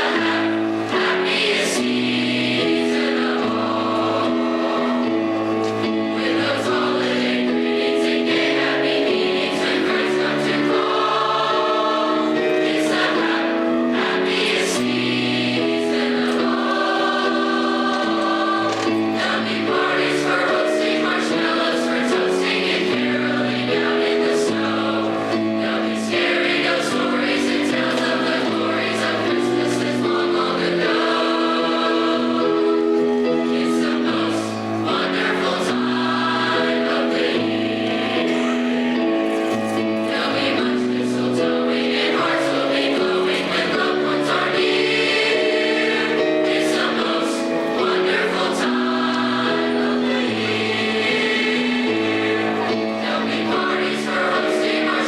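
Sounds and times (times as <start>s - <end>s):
choir singing chords: 0.0s - 55.0s.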